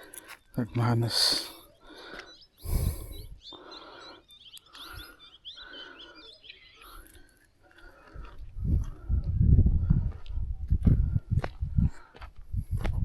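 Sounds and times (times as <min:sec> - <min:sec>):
small birds chirping: 0:00.0 - 0:09.4.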